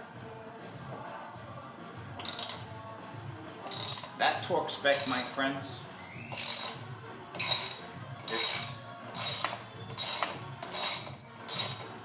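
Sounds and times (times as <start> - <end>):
ratchet wrench clicking: 2.2 - 2.7, 3.7 - 4.2, 6.4 - 12.0.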